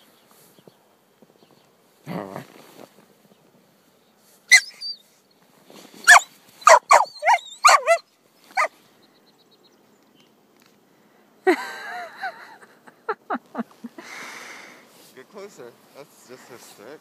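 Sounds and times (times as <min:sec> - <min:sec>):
puppy barking: 0:04.5 - 0:04.9, 0:06.1 - 0:08.0.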